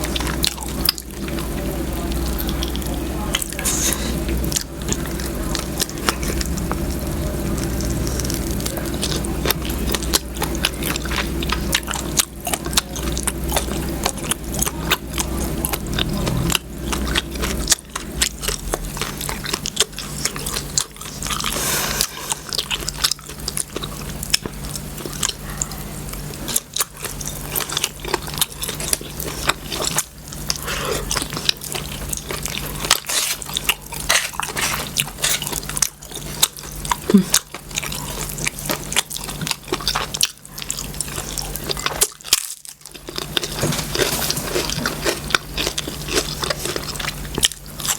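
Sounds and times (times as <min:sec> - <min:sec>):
person chewing food: 0:00.0 - 0:47.9
steady low hum: 0:00.0 - 0:47.9.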